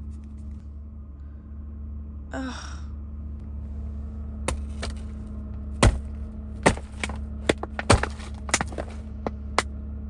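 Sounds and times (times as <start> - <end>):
steady low hum: 0.0 - 10.0
sharp knocks and cracks: 4.5 - 5.2, 5.8 - 9.7.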